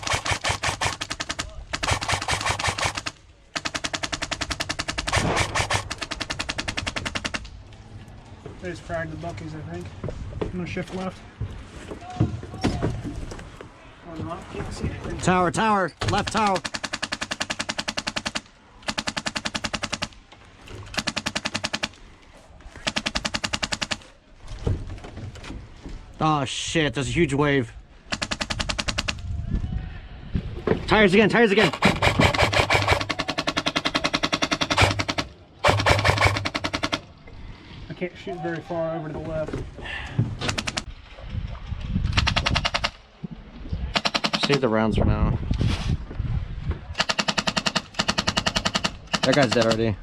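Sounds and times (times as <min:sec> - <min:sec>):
airsoft gun firing full auto: 0:00.0 - 0:07.4, 0:31.6 - 0:37.0, 0:44.0 - 0:44.6, 0:47.0 - 0:49.8.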